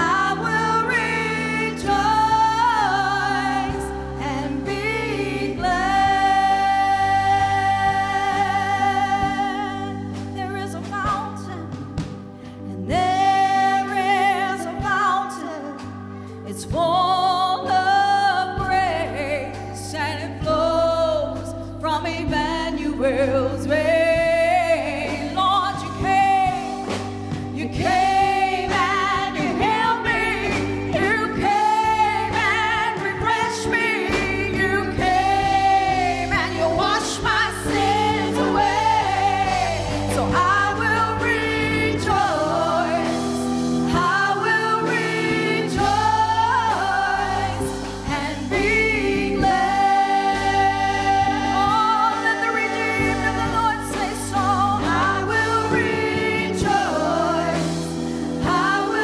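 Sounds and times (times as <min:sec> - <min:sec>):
gospel singing with accompaniment: 0:00.0 - 0:59.0
sustained low notes: 0:26.0 - 0:52.1.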